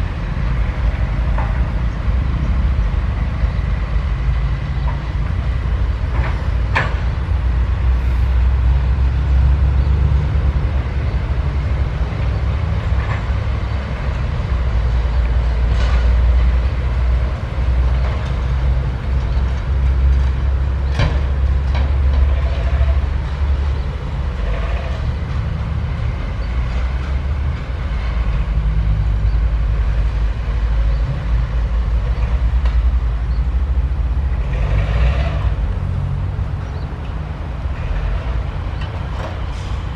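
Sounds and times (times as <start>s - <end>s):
excavator diesel engine droning: 0.0s - 39.9s.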